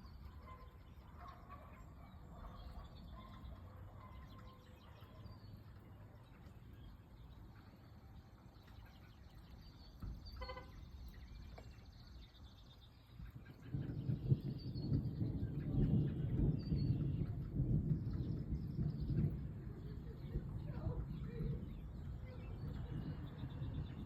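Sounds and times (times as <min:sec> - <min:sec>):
birds chirping: 0:00.0 - 0:24.0
low outdoor rumble: 0:00.0 - 0:24.0
thunder rumbling: 0:13.1 - 0:24.0.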